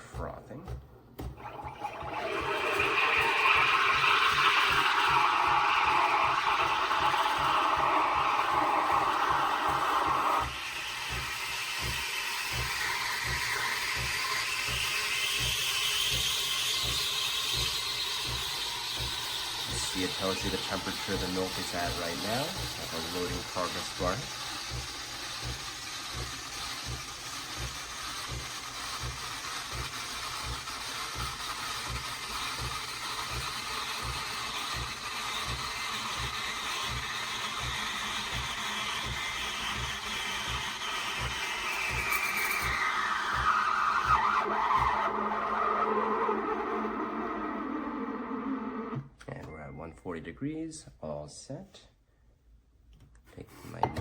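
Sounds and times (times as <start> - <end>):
steam wand frothing milk: 0.0 - 49.2.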